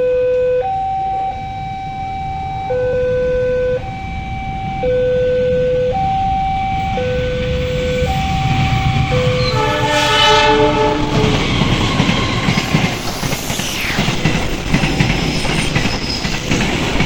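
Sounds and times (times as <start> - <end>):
two-tone level crossing alarm: 0.0 - 16.6
road traffic rumble: 0.4 - 17.0.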